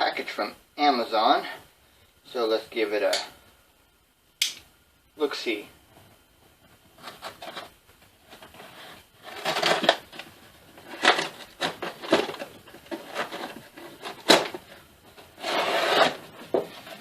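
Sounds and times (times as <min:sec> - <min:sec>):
sharp snap: 0:04.4 - 0:04.7
packaging rustling and tearing: 0:08.3 - 0:17.0.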